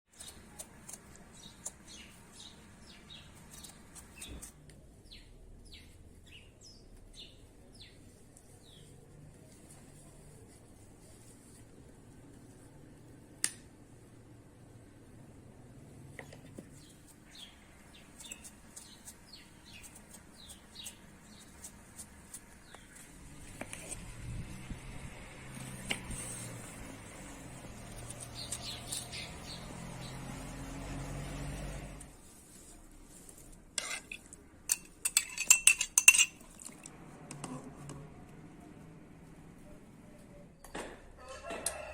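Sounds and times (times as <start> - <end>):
small bird chirping: 16.8 - 21.7, 28.0 - 30.2
metal utensil clinking on cookware: 33.8 - 36.7.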